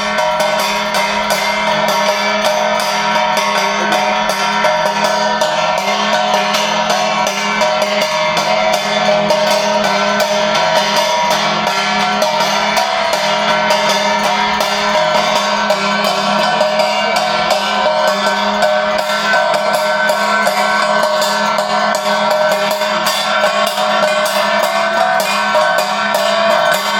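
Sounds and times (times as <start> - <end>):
drums and cymbals beating: 0.0 - 26.9
steady held tones: 0.0 - 26.9.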